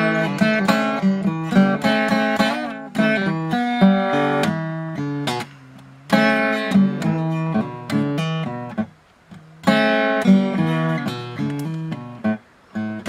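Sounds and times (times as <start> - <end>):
acoustic guitar strumming blues: 0.0 - 13.0.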